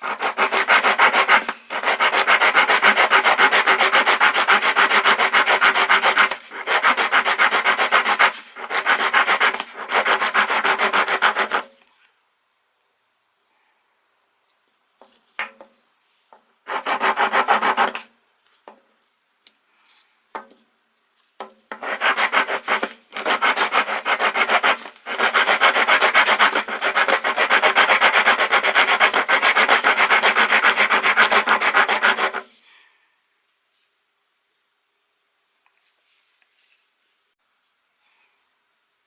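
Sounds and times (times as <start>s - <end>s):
rasp filing wood: 0.0s - 11.7s, 16.7s - 18.0s, 21.8s - 32.5s.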